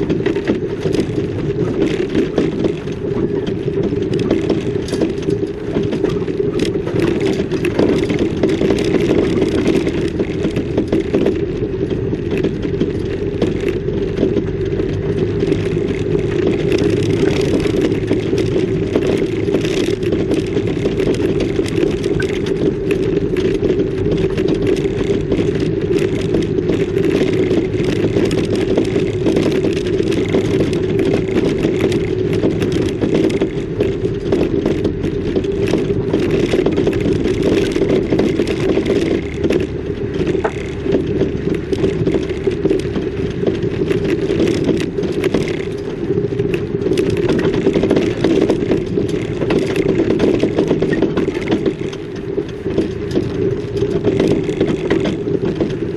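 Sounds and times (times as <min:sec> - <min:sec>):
rattles and clatter: 0:00.0 - 0:55.9
vehicle engine droning: 0:00.0 - 0:55.9.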